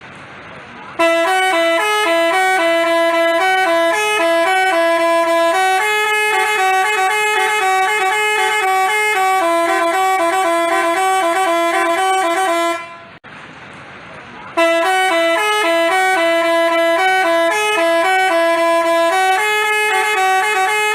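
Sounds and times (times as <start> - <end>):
bus horn playing tune: 0.9 - 13.2, 14.6 - 20.9.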